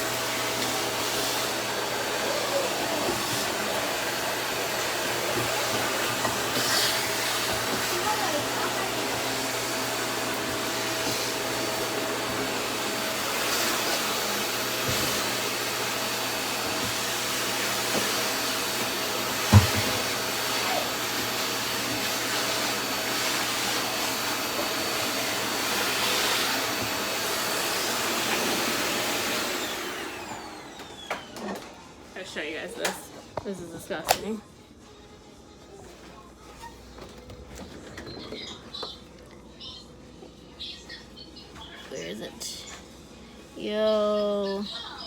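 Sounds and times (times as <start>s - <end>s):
vacuum cleaner running: 0.0s - 34.0s
knock: 19.5s - 20.0s.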